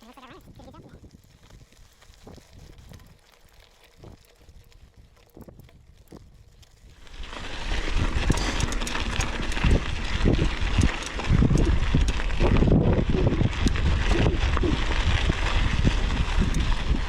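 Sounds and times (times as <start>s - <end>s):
tyres crunching on gravel: 0.0s - 17.0s
bike clattering over bumps: 7.0s - 17.0s
low rumble: 7.0s - 17.0s.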